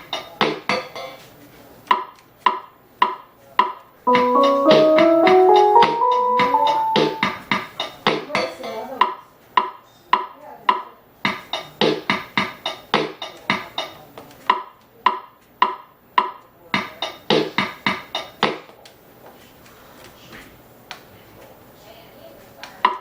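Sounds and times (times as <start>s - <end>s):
electronic keyboard plucky notes: 4.1s - 7.5s.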